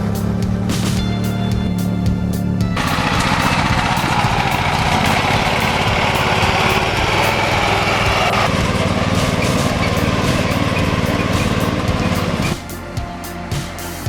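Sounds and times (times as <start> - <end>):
small engine running fast: 2.8 - 12.6.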